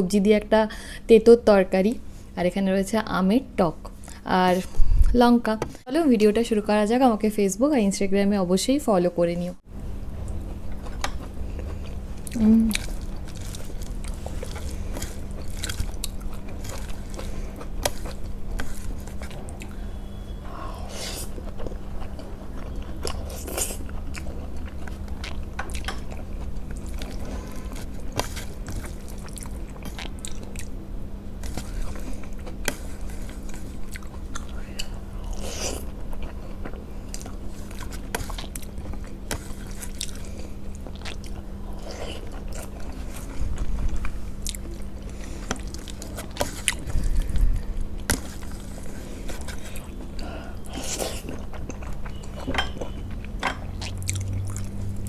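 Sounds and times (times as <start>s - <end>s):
steady low hum: 0.0s - 55.0s
wet chewing and biting: 10.3s - 19.7s, 35.3s - 55.0s.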